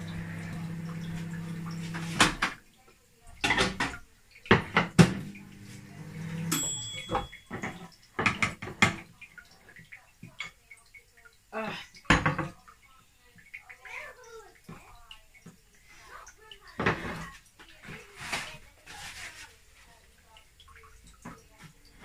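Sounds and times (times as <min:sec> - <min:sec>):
appliance hum: 0:00.0 - 0:02.6, 0:04.5 - 0:07.7
dishes and pots clattering: 0:03.4 - 0:05.3, 0:06.2 - 0:09.1, 0:12.1 - 0:12.6, 0:16.8 - 0:18.4.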